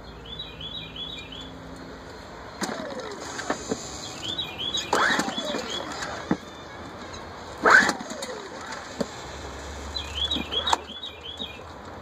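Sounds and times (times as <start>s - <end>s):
engine turning over with whir: 0.0s - 12.0s
recoil starter pulled: 2.6s - 10.9s.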